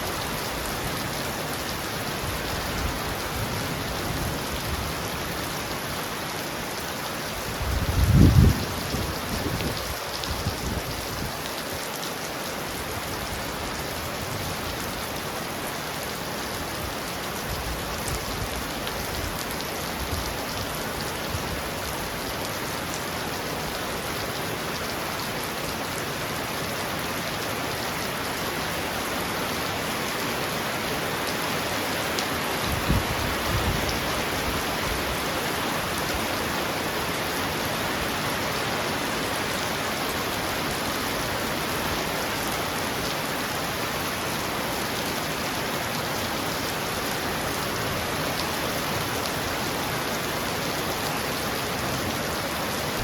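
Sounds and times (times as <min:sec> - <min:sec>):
heavy rain pounding on a roof: 0:00.0 - 0:53.0.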